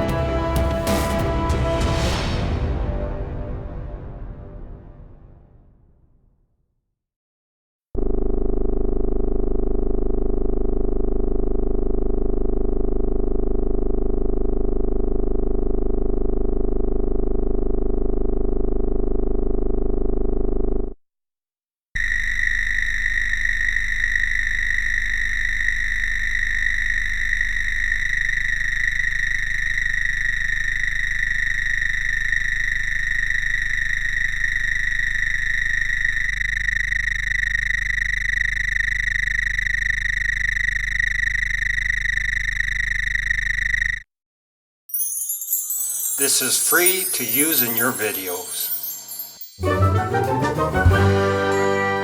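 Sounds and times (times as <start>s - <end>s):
low buzzing drone: 8.0s - 20.9s, 22.0s - 44.0s
synthesized high tone: 45.8s - 52.0s.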